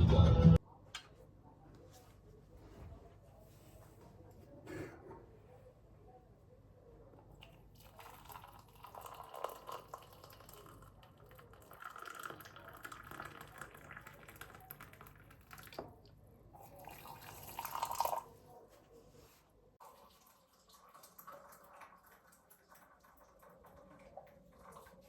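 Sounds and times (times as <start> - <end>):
faint water dripping and trickling: 7.3 - 18.3, 19.8 - 25.0.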